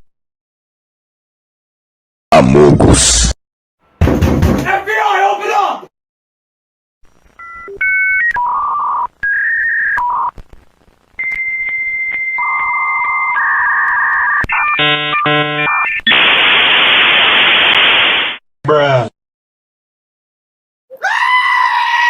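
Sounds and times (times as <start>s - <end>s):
loud static hiss: 9.0s - 11.6s, 12.5s - 18.4s
modem answer and handshake tones: 14.5s - 16.0s.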